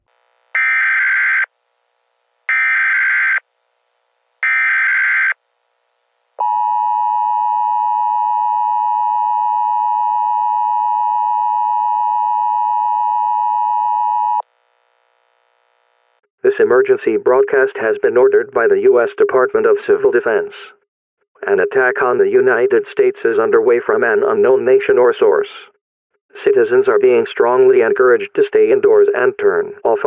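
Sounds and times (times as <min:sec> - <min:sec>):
digital data tone bursts: 0:00.6 - 0:01.5.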